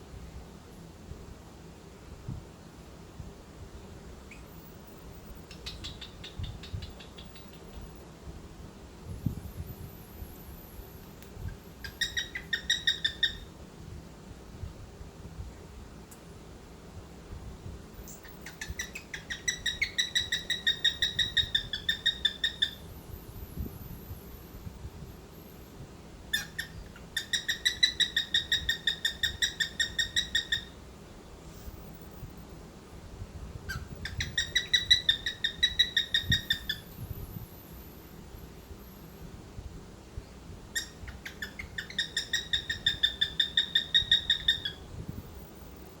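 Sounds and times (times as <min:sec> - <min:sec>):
cockatiel chirping: 0:05.5 - 0:07.9, 0:11.5 - 0:13.5, 0:18.0 - 0:22.8, 0:26.3 - 0:30.8, 0:33.7 - 0:36.9, 0:40.8 - 0:44.8.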